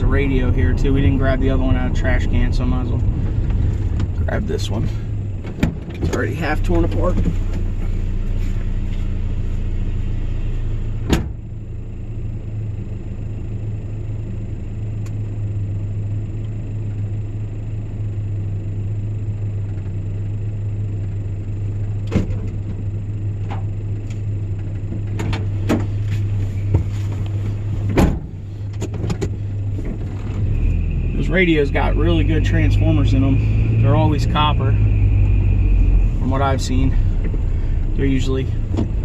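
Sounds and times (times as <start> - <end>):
vehicle engine idling: 0.0 - 39.0
knocks and clunks: 5.4 - 7.7, 11.0 - 11.4, 24.8 - 30.5, 38.6 - 39.0
door shutting thud: 27.9 - 28.3.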